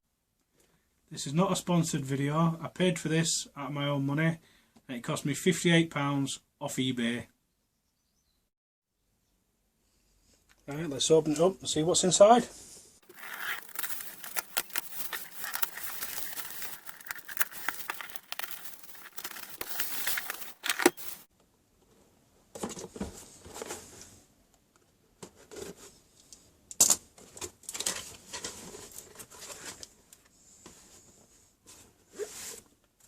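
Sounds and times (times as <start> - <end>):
packaging rustling: 13.0 - 21.3
packaging tearing and crinkling: 13.0 - 21.3.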